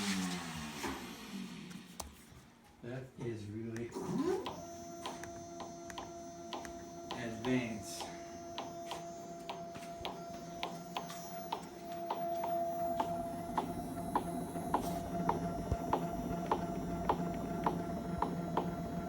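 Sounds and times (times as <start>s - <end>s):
cnc router whining: 3.9s - 19.0s
regular ticking: 9.5s - 19.0s.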